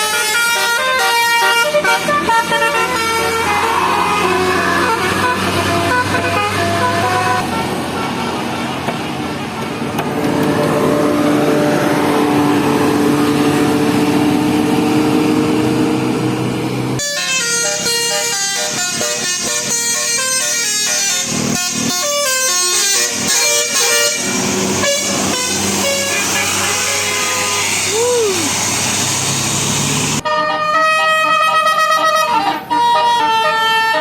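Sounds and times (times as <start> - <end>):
bus horn: 0.0 - 8.8, 17.0 - 28.6, 30.2 - 34.0
engine and road noise: 0.0 - 34.0.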